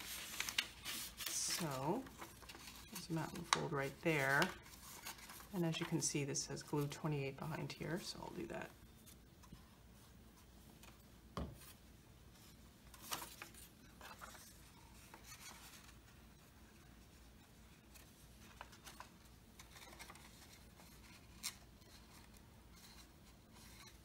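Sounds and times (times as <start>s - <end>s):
paper rustling: 0.0s - 6.0s, 12.4s - 24.0s.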